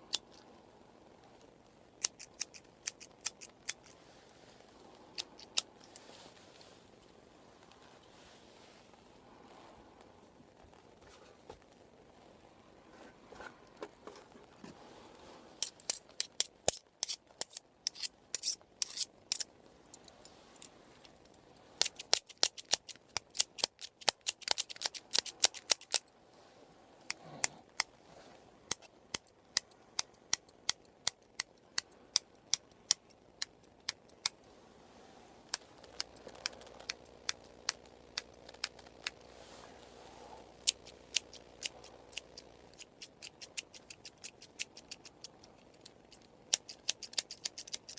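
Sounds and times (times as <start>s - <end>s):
scissors snipping hair: 2.0s - 4.0s, 15.6s - 20.1s, 21.8s - 26.0s, 40.6s - 47.9s.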